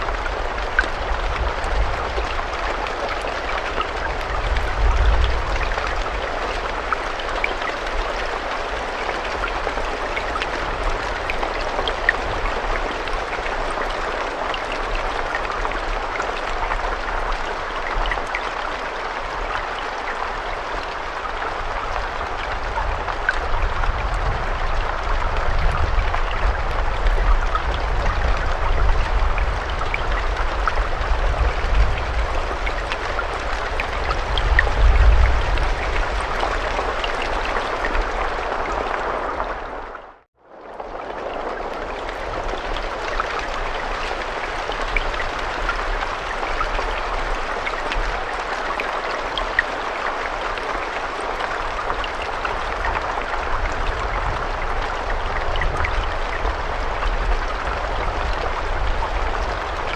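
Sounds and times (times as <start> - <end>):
raindrop ticks: 0.0 - 39.7
steady rain: 0.0 - 59.9.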